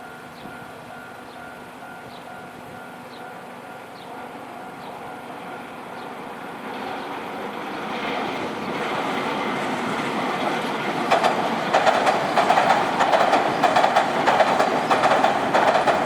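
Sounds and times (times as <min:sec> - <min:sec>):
level-crossing warning bell: 0:00.0 - 0:06.8
train approaching: 0:00.0 - 0:16.0.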